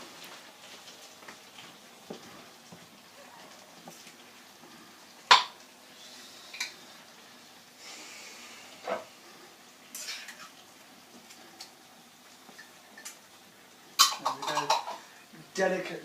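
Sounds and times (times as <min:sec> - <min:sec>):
utensils and containers clattering: 0:09.9 - 0:10.6, 0:14.0 - 0:15.1.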